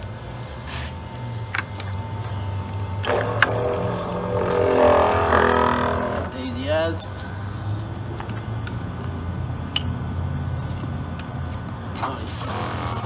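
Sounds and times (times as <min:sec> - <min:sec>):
steady low hum: 0:00.0 - 0:13.0
pump humming: 0:01.5 - 0:06.4, 0:12.3 - 0:13.0.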